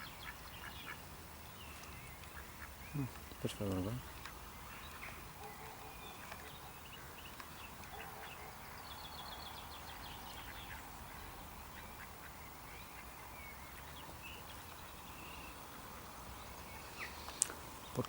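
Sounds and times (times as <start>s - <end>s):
bird calls: 0.0s - 18.0s
steady background hiss: 0.0s - 18.0s.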